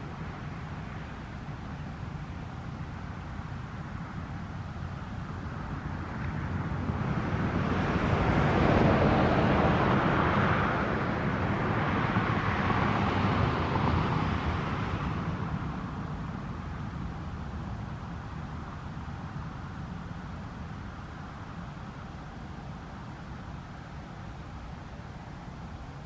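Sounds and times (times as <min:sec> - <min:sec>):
vehicle passing by: 0:06.7 - 0:16.1.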